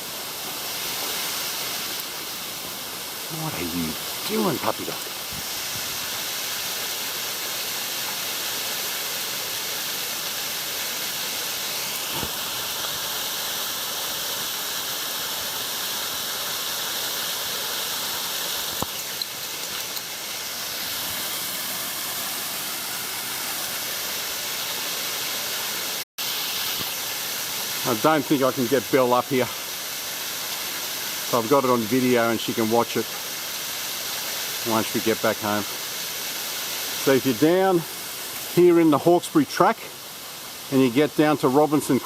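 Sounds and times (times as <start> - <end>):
waterfall rushing over rocks: 0.0 - 42.0.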